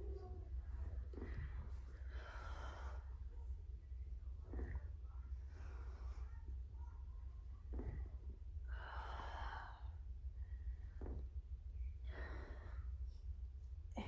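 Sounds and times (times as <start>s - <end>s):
low steady hum: 0.0s - 14.0s
woman breathing: 0.8s - 3.5s, 7.7s - 13.3s.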